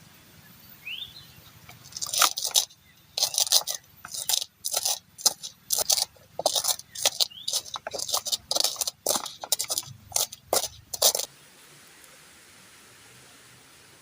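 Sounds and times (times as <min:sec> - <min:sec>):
faint steady hiss: 0:00.0 - 0:03.2, 0:08.4 - 0:14.0
eating crunches and clinks: 0:01.7 - 0:11.3.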